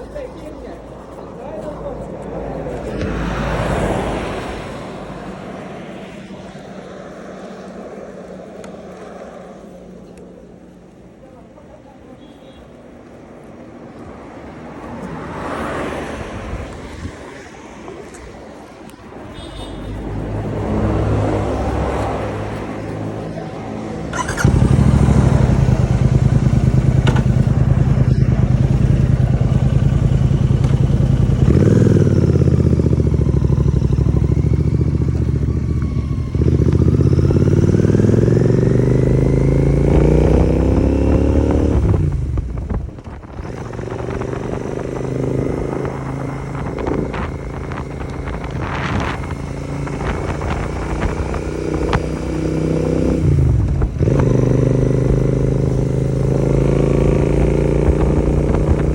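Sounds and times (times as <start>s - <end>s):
motorcycle engine accelerating: 19.4s - 58.9s.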